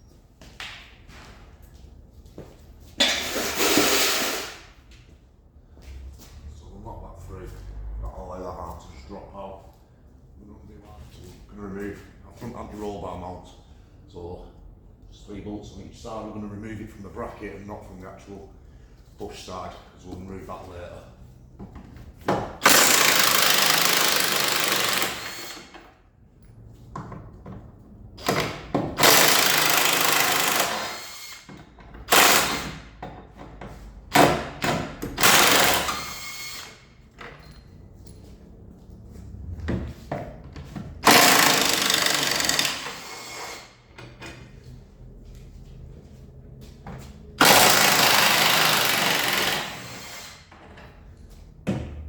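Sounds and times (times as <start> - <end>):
impact wrench bursts: 3.0 - 4.7, 22.6 - 25.8, 28.2 - 32.9, 34.1 - 36.9, 41.0 - 43.8, 47.4 - 50.5.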